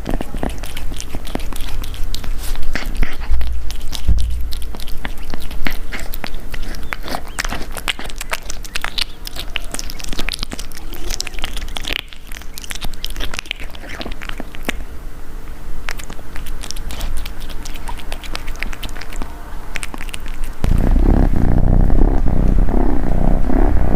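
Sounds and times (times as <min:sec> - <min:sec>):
kitten chewing wetly: 0:00.0 - 0:23.9
loud low purr: 0:16.5 - 0:23.9.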